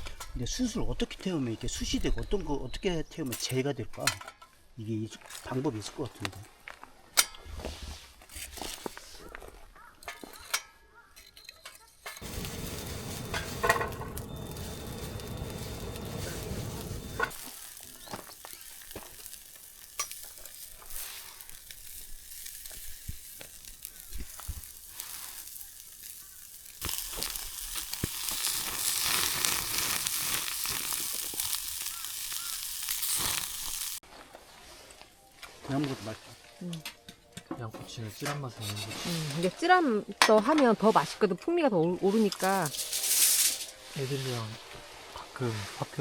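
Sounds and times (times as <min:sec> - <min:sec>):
skewers sizzling over charcoal: 0:12.0 - 0:46.0
fire pops: 0:12.2 - 0:34.0.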